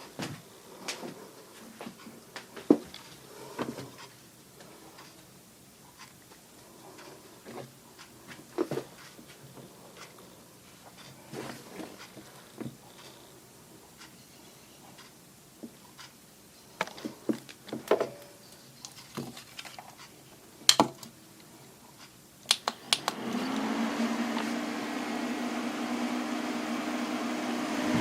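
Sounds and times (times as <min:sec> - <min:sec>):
electric fan humming: 0:00.0 - 0:28.0
handling knocks and clicks: 0:16.8 - 0:21.2
sharp clicks: 0:22.0 - 0:23.6.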